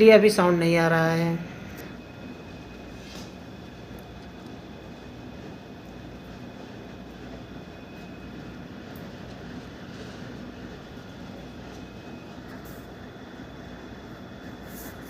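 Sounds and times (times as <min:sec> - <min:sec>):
air conditioner blower fan: 0:00.0 - 0:15.0.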